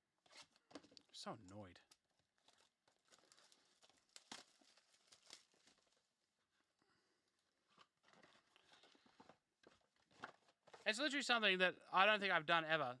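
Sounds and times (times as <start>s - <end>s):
card pack wrappers crinkling: 2.4s - 6.1s.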